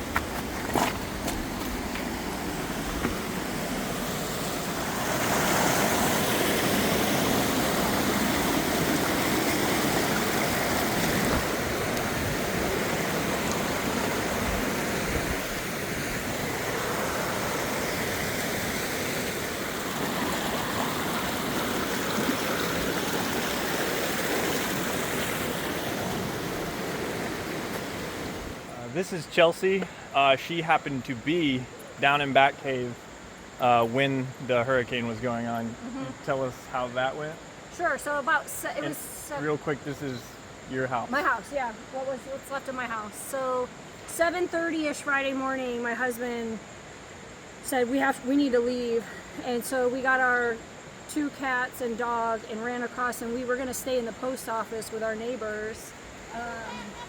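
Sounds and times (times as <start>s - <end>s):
rushing water: 0.0s - 29.6s.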